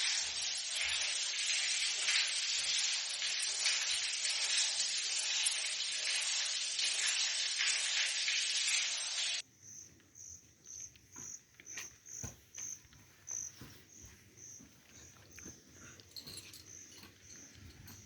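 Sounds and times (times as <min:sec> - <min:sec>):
loud hiss: 0:00.0 - 0:09.4.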